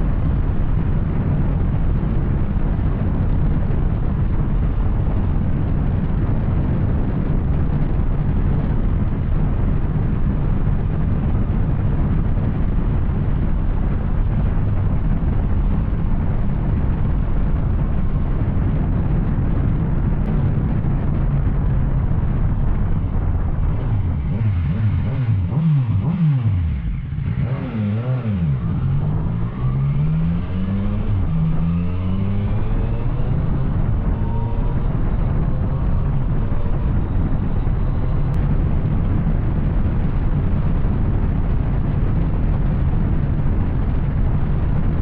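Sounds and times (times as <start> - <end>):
motorcycle engine revving: 0.0 - 44.9.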